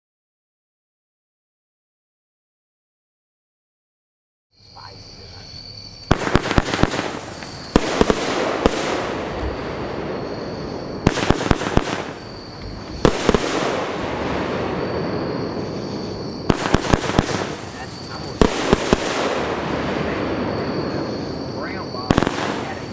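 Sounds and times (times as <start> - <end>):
firework bangs with crackle: 5.9 - 22.9.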